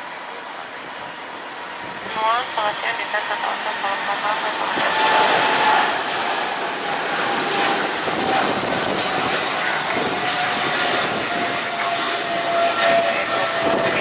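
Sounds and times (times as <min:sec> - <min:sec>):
jet airliner passing: 0:00.0 - 0:14.0.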